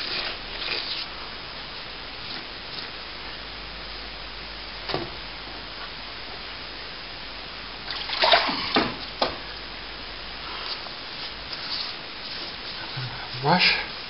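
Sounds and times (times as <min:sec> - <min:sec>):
water splashing in a container: 0:07.8 - 0:09.0
steady hiss: 0:09.0 - 0:14.0.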